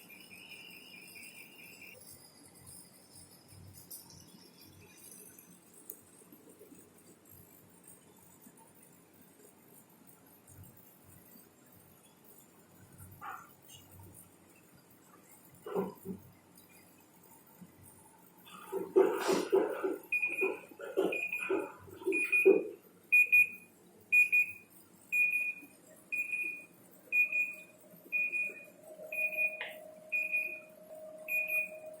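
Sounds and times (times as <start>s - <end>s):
washing machine alarm beeps: 0.0s - 5.2s, 18.4s - 32.0s
faint steady hum: 0.0s - 32.0s.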